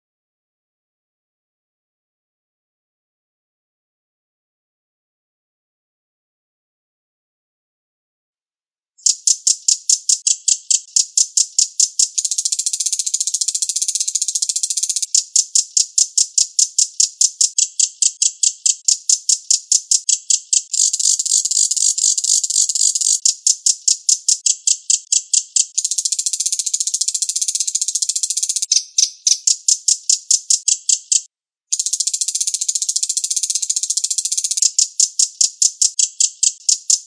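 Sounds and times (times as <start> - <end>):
rattling bird trill: 9.0 - 37.0.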